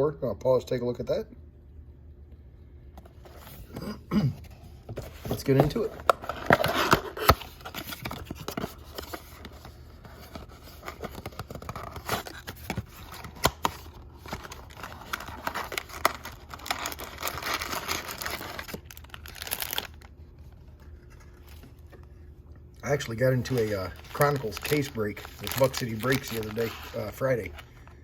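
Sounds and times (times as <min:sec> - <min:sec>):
plastic wrapping tearing and crinkling: 0:10.4 - 0:20.1, 0:23.3 - 0:27.7.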